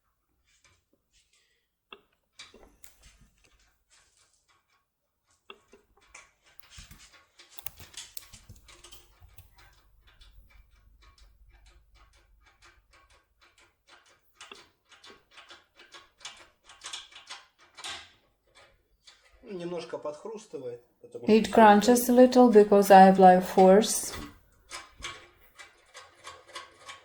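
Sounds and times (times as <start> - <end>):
lock pick clicking in lock: 7.6 - 9.6.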